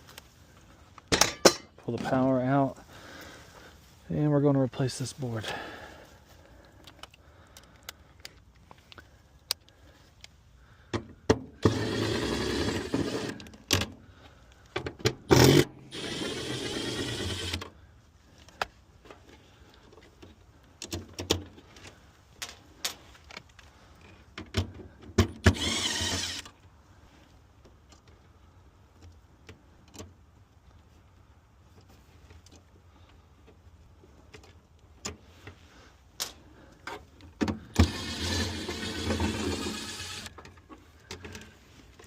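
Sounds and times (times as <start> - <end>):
cordless drill running: 11.6 - 13.4, 15.3 - 17.6, 25.4 - 26.5, 37.7 - 40.4.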